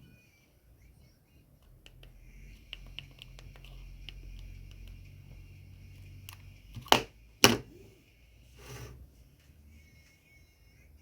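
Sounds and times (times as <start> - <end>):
soft brushing sound: 7.7 - 9.6.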